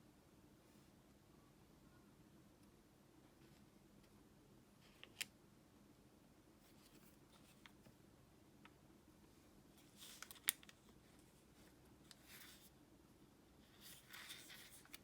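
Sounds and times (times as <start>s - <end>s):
paper crinkling and folding: 9.8s - 12.7s, 13.6s - 15.0s
paper rustle: 9.8s - 12.7s, 13.7s - 15.0s
paper crackle: 13.7s - 15.0s.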